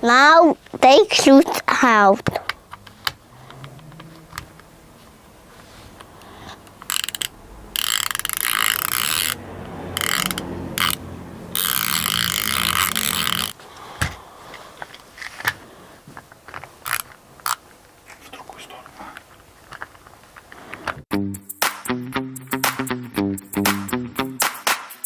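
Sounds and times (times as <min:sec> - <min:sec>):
electric screwdriver whirring: 0:11.6 - 0:13.6.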